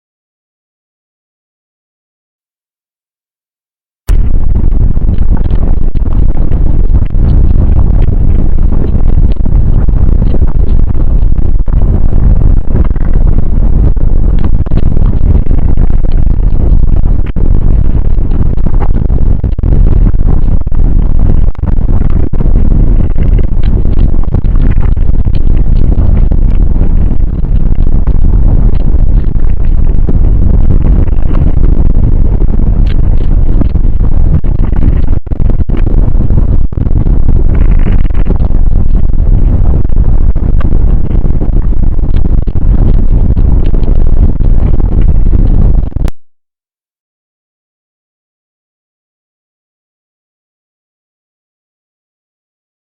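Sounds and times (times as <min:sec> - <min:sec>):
deep crackling earth rumble: 0:04.1 - 0:46.4.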